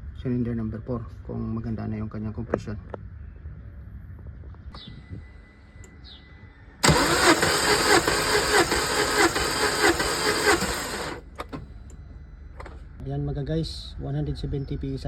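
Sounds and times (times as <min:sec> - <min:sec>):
engine cranking on starter: 0:06.8 - 0:11.7.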